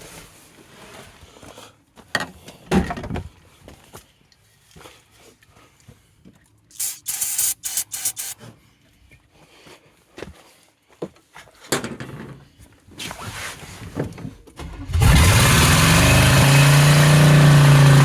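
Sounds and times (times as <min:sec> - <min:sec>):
aerosol can spraying: 0:06.7 - 0:08.4.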